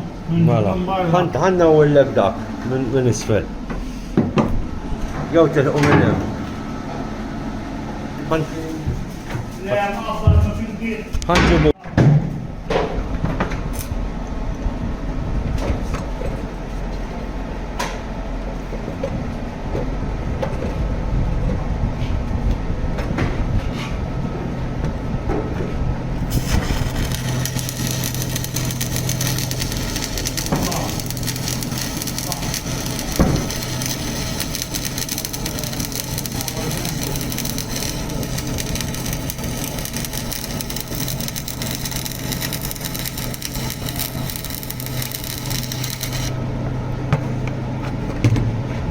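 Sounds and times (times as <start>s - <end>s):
electric power tool running: 26.3s - 46.4s
harsh grinding hiss: 26.3s - 46.4s.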